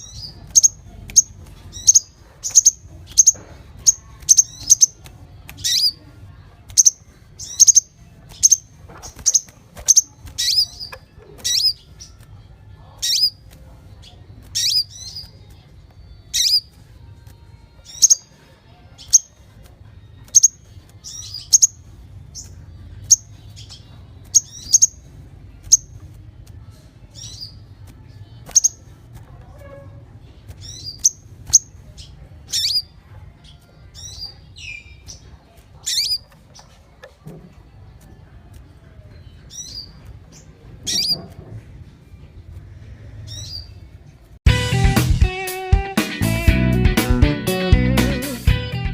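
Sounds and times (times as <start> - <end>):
songbird chirping: 0.0 - 44.4.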